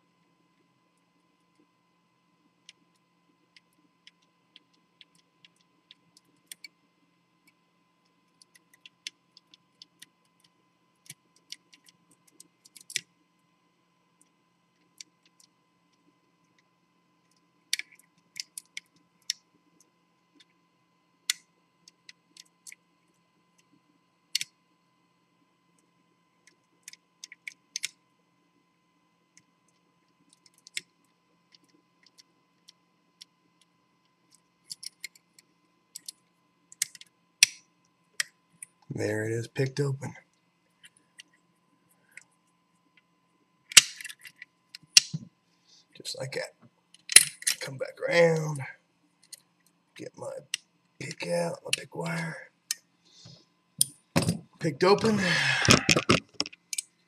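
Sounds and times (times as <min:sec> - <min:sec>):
faint steady hum: 0:00.0 - 0:57.0.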